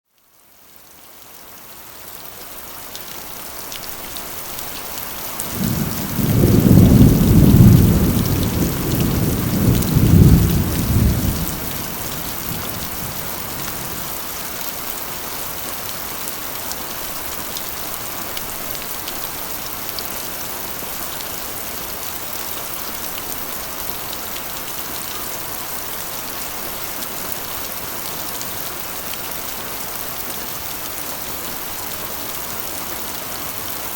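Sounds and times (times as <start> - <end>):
rain on a metal roof: 0.0 - 33.9
thunder rumbling: 5.5 - 14.2.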